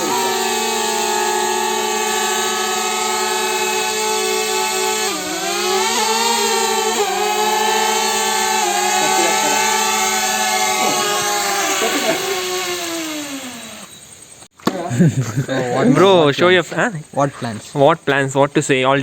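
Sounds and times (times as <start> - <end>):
drone propellers whining: 0.0 - 14.5.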